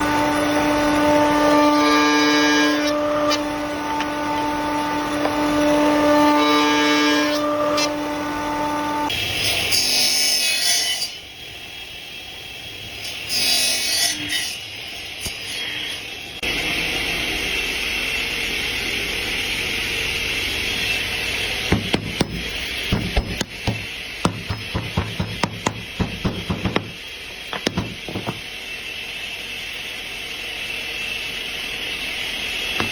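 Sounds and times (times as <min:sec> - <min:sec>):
hammer knocking on wood: 0:21.7 - 0:28.5.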